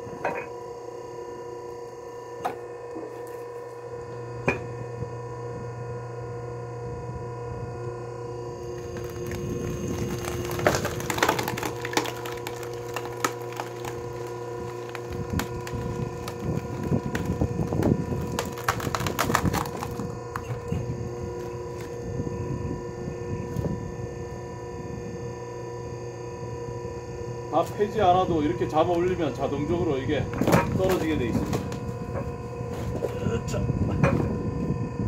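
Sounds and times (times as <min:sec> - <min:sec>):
log splitter motor humming: 0:00.0 - 0:35.0
wood cracking and splintering: 0:08.6 - 0:22.2, 0:30.1 - 0:34.3.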